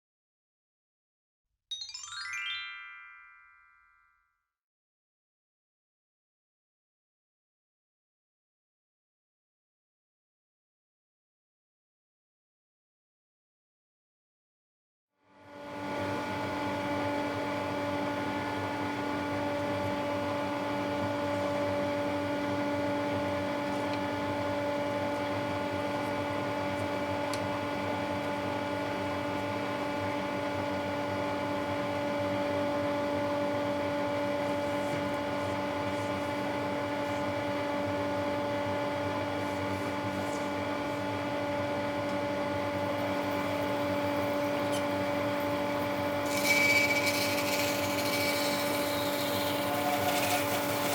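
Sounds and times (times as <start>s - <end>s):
electric machine humming: 31.2s - 50.9s.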